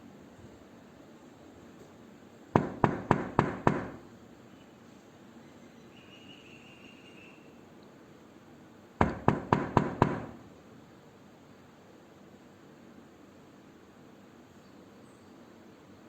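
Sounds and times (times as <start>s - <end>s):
knocking on a door: 2.6s - 4.1s, 9.0s - 10.5s.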